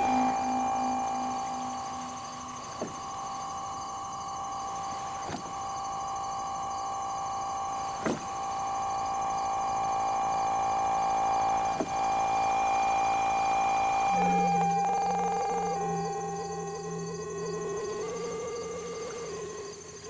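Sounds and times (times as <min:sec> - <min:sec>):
synthesizer drone with warble: 0:00.0 - 0:06.6.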